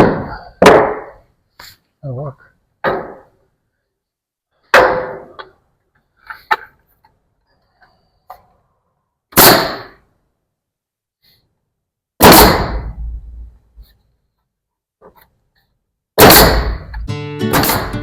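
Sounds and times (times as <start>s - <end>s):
wooden board banging into place: 2.8s - 3.4s.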